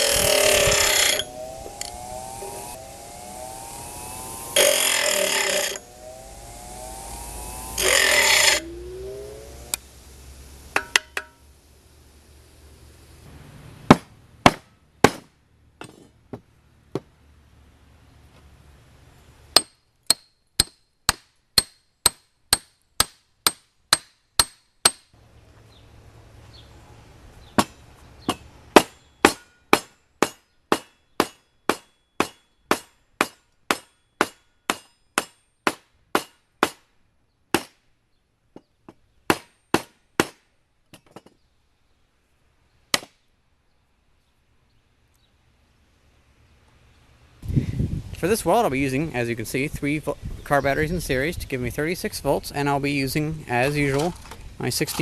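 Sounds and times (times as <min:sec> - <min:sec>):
small power tool spinning up: 0:00.0 - 0:09.8
hammer striking metal: 0:10.8 - 0:11.4, 0:19.6 - 0:25.1, 0:27.6 - 0:36.8.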